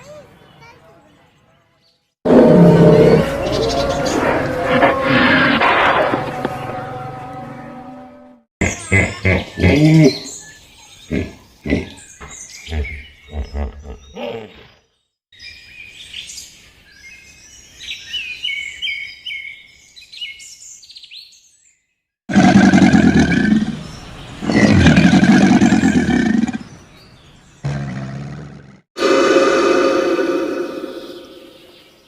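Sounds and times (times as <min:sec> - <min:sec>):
small birds chirping: 0:00.0 - 0:02.2, 0:08.6 - 0:22.0, 0:23.0 - 0:28.6.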